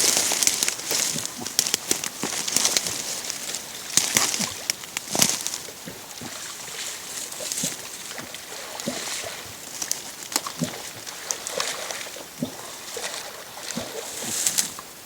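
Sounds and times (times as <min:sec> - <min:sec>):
water sloshing and splashing: 0:00.0 - 0:15.0.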